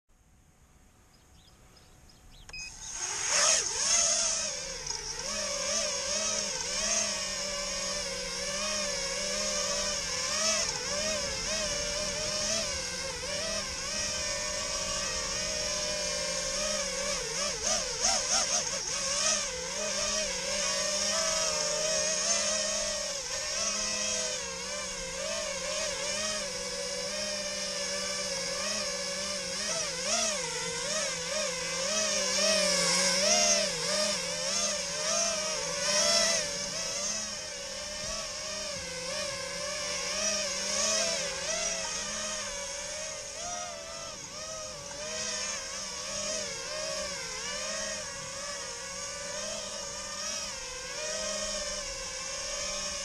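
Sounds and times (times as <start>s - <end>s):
drone motors whining: 1.1s - 53.0s.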